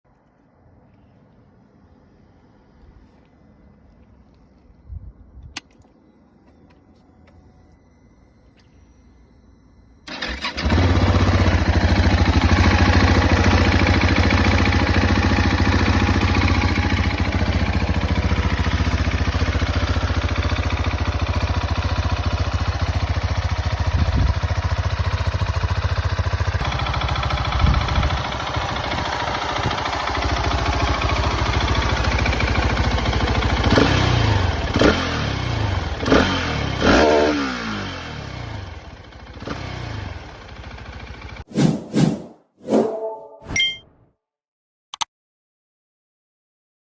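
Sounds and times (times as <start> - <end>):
motorcycle engine idling and revving: 10.1 - 41.5.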